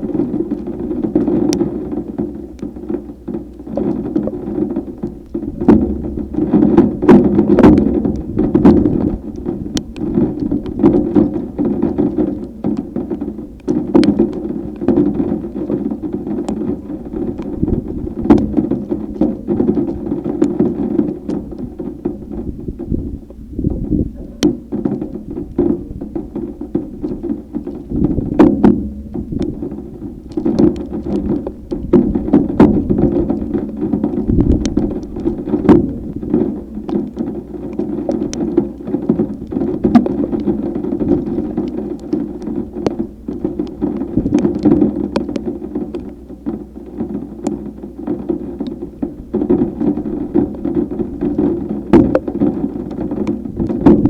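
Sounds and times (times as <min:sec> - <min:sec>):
steady low drone: 0:04.3 - 0:13.0, 0:25.1 - 0:37.2.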